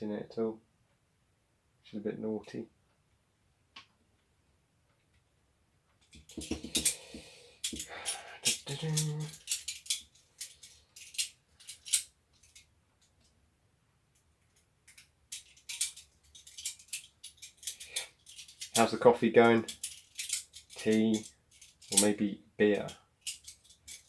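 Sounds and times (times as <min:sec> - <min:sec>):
plastic parts clicking and rattling: 0:06.0 - 0:13.3, 0:14.9 - 0:24.0.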